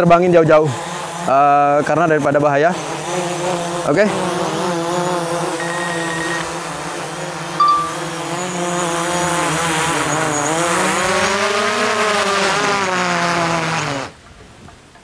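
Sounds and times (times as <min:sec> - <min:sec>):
drone propellers humming: 0:05.4 - 0:11.8
louder beep with click: 0:05.6 - 0:06.5, 0:07.6 - 0:08.1
short thin beep: 0:05.6 - 0:06.5, 0:07.6 - 0:08.1.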